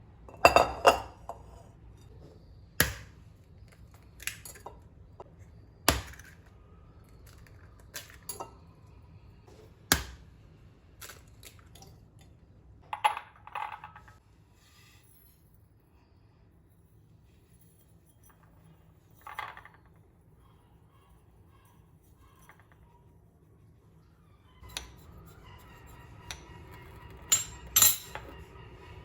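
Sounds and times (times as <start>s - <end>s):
kitchen utensils knocking and clattering: 0.3s - 1.7s, 24.6s - 29.0s.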